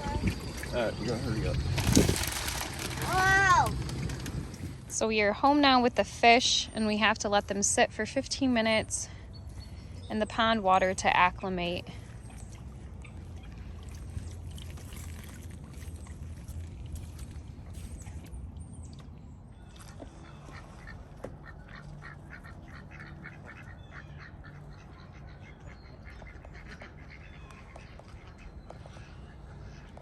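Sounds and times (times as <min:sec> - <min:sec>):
low rumble: 0:00.0 - 0:07.6.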